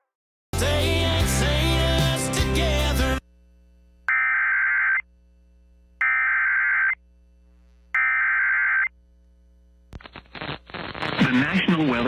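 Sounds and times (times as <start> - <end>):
digital data tone bursts: 6.0 - 7.0, 8.0 - 8.9.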